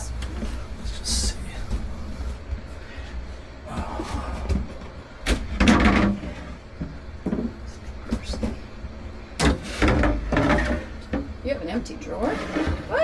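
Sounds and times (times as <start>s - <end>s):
low steady hum: 0.0s - 13.0s
wooden drawers scraping and knocking: 12.1s - 13.0s.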